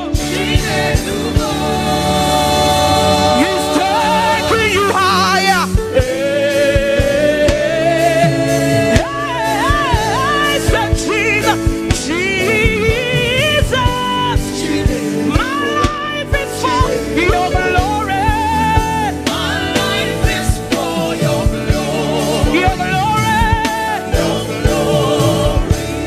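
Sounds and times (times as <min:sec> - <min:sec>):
live gospel band playing: 0:00.0 - 0:26.0
steady drum beat: 0:00.0 - 0:26.0.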